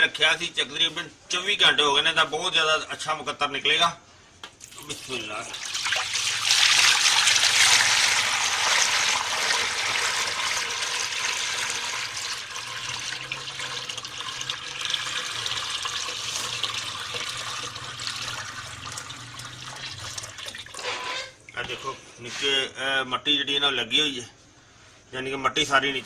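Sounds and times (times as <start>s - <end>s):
liquid pouring and splashing: 4.6s - 21.6s.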